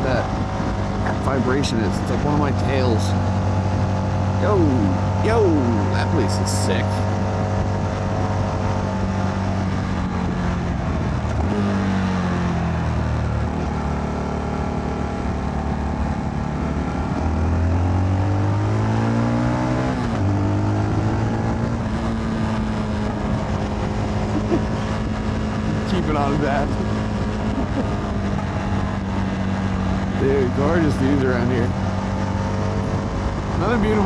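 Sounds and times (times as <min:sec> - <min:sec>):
motorcycle engine under way: 0:07.0 - 0:34.0.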